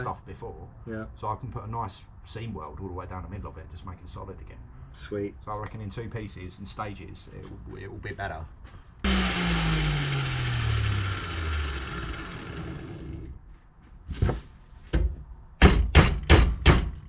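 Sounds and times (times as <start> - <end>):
power tool motor spinning down: 9.1 - 13.4.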